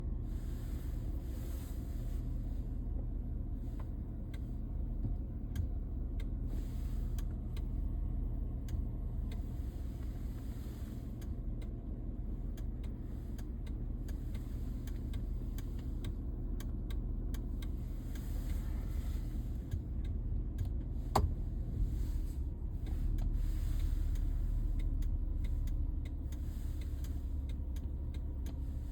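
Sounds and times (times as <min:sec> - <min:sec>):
low vehicle rumble: 0:00.0 - 0:28.9
clicking behind dashboard: 0:03.8 - 0:28.9.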